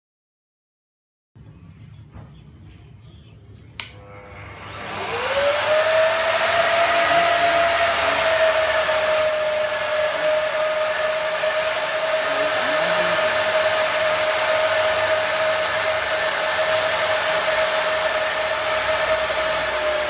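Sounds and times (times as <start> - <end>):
magnetic drill motor whine: 4.0 - 20.0.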